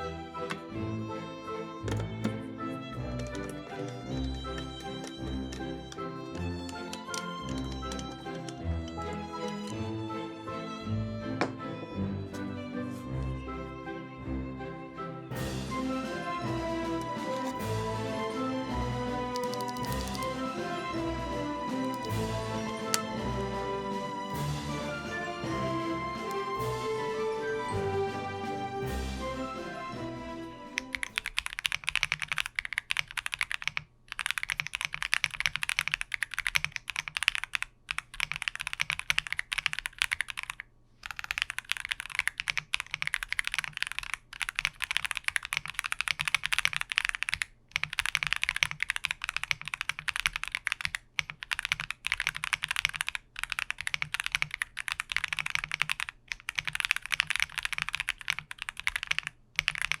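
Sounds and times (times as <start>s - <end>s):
mechanical keyboard typing: 1.9s - 9.8s, 17.0s - 17.6s, 19.2s - 20.5s, 21.9s - 23.2s, 30.7s - 60.0s.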